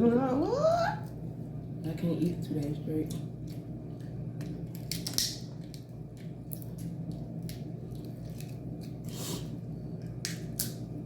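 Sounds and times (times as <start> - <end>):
steady low hum: 0.0 - 11.0
crab shells cracking: 4.4 - 9.0.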